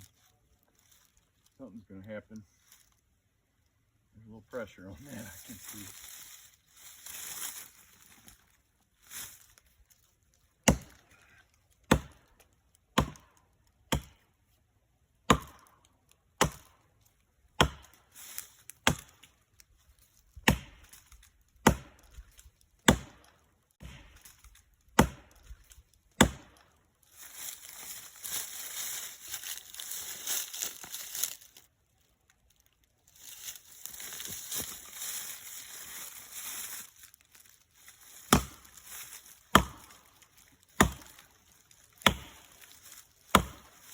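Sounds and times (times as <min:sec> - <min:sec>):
axe chopping tree trunk: 0:10.6 - 0:11.1, 0:11.8 - 0:14.3, 0:15.2 - 0:16.8, 0:17.5 - 0:18.1, 0:18.8 - 0:19.3, 0:20.4 - 0:26.7, 0:38.2 - 0:38.8, 0:39.5 - 0:40.2, 0:40.8 - 0:41.3, 0:41.9 - 0:43.9.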